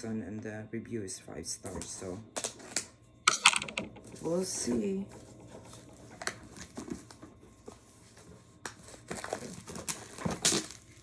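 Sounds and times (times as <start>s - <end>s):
packaging rustling: 5.2s - 11.0s.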